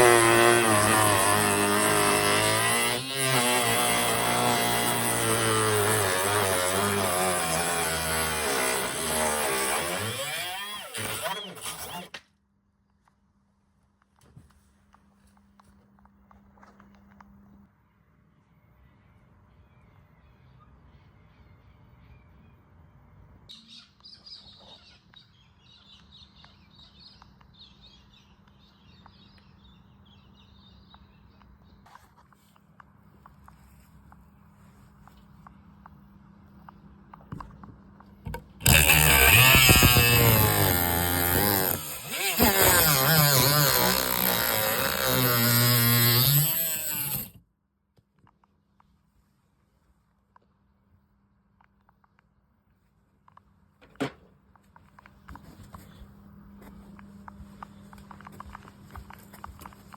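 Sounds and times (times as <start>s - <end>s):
power tool running under load: 0.0s - 12.2s, 38.3s - 47.4s.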